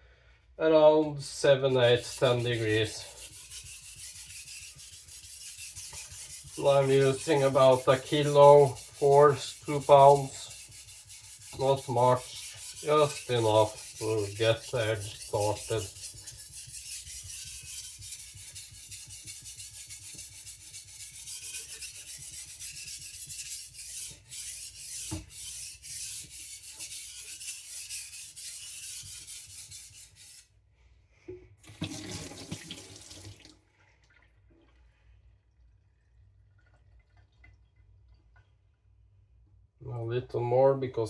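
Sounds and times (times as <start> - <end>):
blade scraping on wet whetstone: 1.5 - 30.5.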